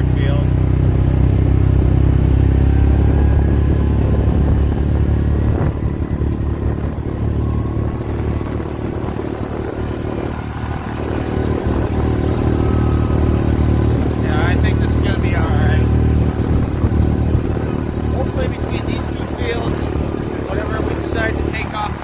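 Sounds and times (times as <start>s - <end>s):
vehicle engine running: 0.0s - 22.0s
rattle: 16.0s - 20.2s.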